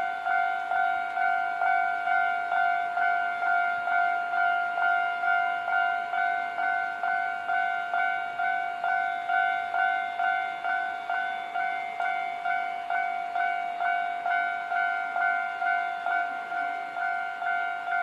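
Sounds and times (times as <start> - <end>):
level-crossing warning bell: 0.0 - 18.0.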